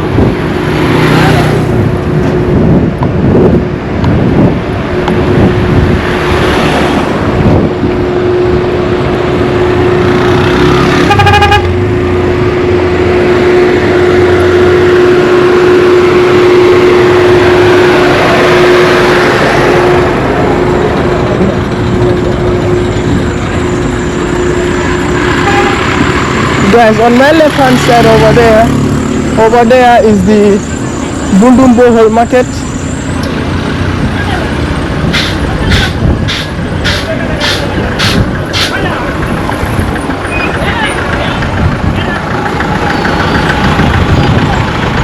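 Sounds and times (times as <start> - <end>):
motor vehicles running: 0.0 - 45.0
vehicle horn tooting: 11.0 - 11.8, 25.4 - 26.0.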